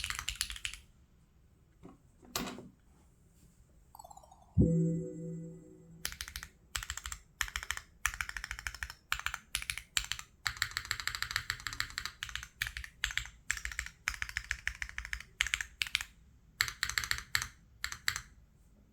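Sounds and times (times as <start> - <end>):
typing on mechanical keyboard: 0.0 - 0.9, 6.1 - 18.3.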